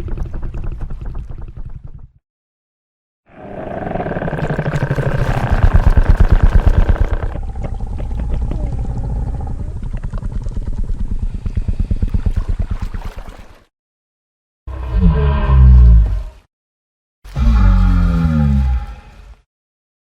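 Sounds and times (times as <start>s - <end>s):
deep rumbling dinosaur growl: 3.3s - 12.4s, 14.7s - 16.4s, 17.3s - 19.4s.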